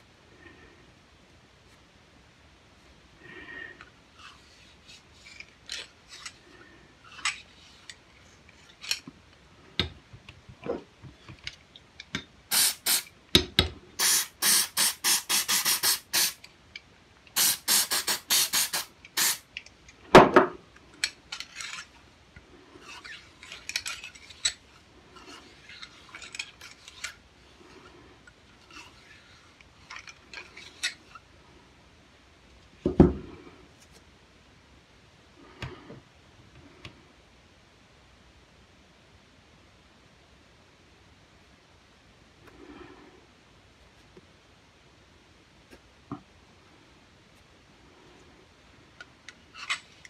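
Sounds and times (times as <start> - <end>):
short hissing strokes: 12.5 - 13.1, 14.0 - 16.4, 17.4 - 19.4.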